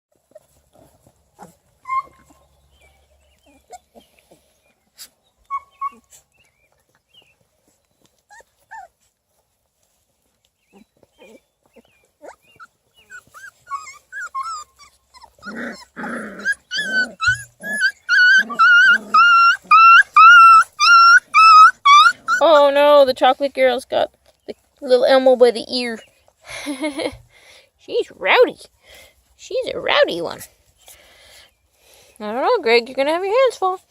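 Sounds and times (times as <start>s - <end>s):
puppies squeaking and whimpering: 0.2s - 6.5s, 7.2s - 9.0s, 10.7s - 23.0s
puppy squealing yelps: 1.8s - 2.4s, 5.5s - 6.1s, 12.2s - 22.5s
puppy growling: 10.7s - 22.7s.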